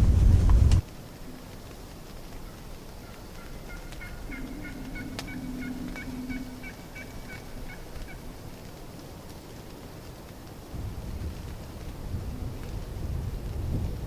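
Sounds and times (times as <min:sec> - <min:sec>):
turkey yelping: 0:02.4 - 0:08.4
low wavering sound: 0:04.1 - 0:08.0.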